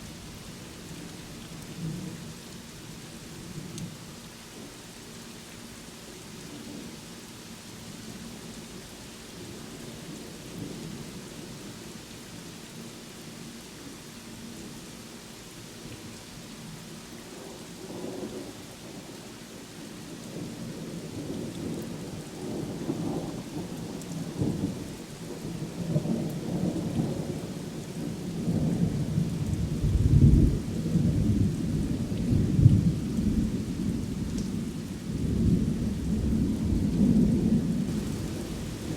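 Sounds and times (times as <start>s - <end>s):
rolling thunder: 35.2s - 38.9s
rain hissing: 37.0s - 38.9s.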